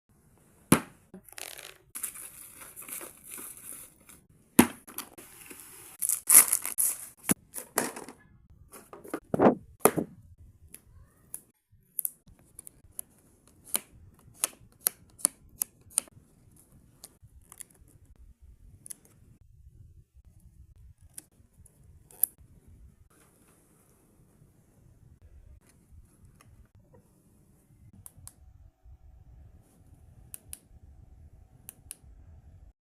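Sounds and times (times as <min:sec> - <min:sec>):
cardboard being torn open: 0:06.0 - 0:07.2.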